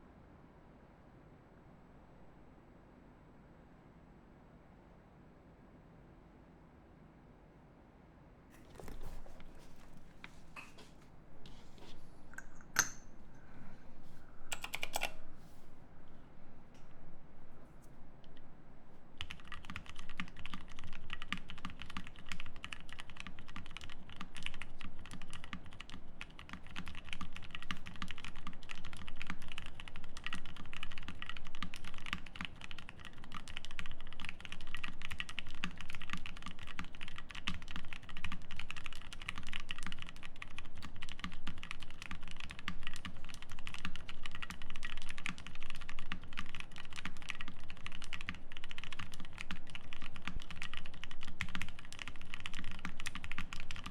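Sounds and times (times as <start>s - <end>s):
fast mechanical keyboard typing: 14.5s - 15.2s, 19.2s - 53.9s.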